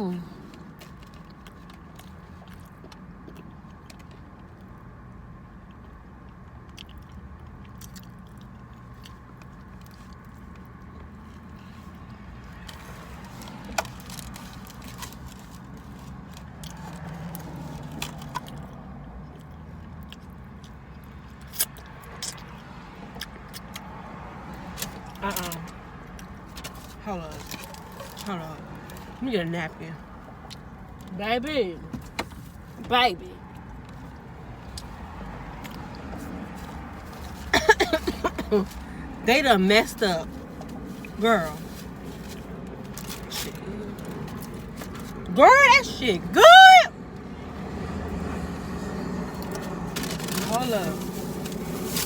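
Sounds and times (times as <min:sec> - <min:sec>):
low hum in car cabin: 0:00.0 - 0:52.0
chewing and wet mouth sounds: 0:00.4 - 0:04.9, 0:05.5 - 0:29.2, 0:30.0 - 0:31.1, 0:33.5 - 0:37.5.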